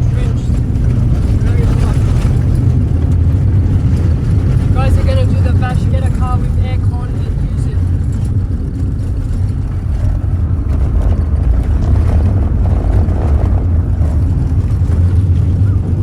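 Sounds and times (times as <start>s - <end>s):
car engine drone: 0.0s - 16.0s
tyres rumbling on gravel: 0.0s - 16.0s.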